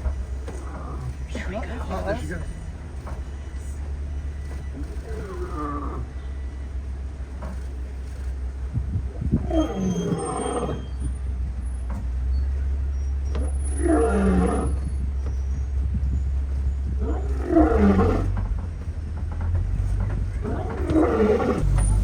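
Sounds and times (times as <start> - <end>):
lions roaring: 0.3 - 3.1, 4.6 - 6.4, 9.1 - 11.2, 13.4 - 15.1, 16.8 - 18.4, 19.6 - 22.0.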